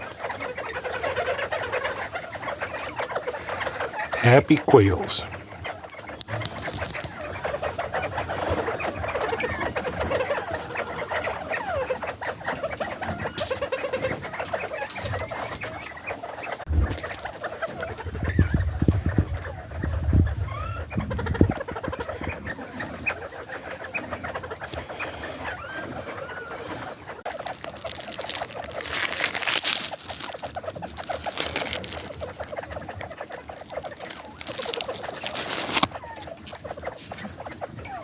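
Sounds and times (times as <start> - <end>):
quail chirping and chattering: 0.0 - 38.0
dull low thumps: 16.7 - 17.2.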